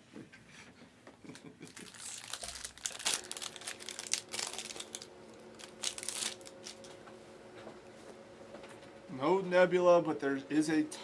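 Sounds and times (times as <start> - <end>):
foil wrappers crinkling: 1.6 - 7.0.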